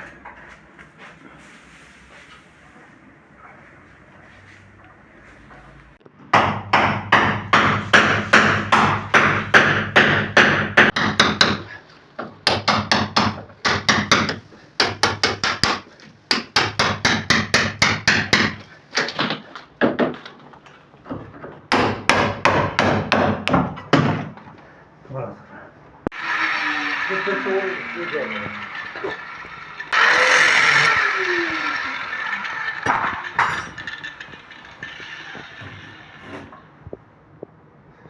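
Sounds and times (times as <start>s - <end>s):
rapid hammering: 6.3s - 11.7s, 12.4s - 18.6s, 21.7s - 24.2s, 26.1s - 36.5s.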